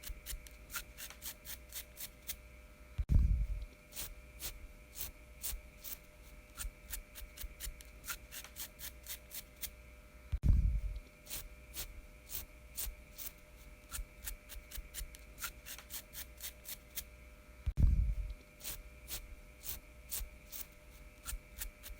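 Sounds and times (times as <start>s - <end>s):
loud low thump: 17.8s - 18.2s.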